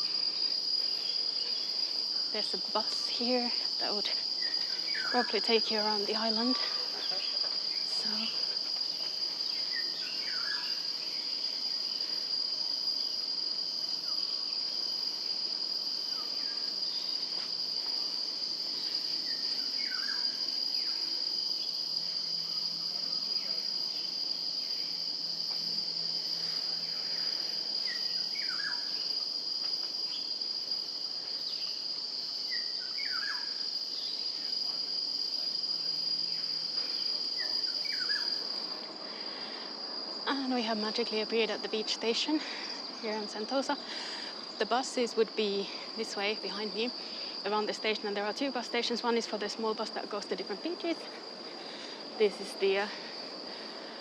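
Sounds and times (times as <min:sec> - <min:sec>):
insects droning: 0:00.0 - 0:54.0.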